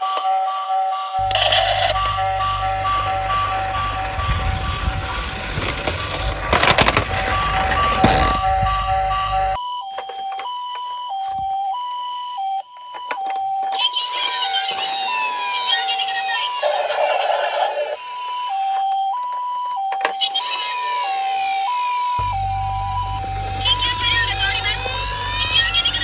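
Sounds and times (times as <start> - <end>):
two-tone ambulance siren: 0.0 - 26.0
toy cars clicking and clattering: 1.3 - 8.4, 12.8 - 26.0.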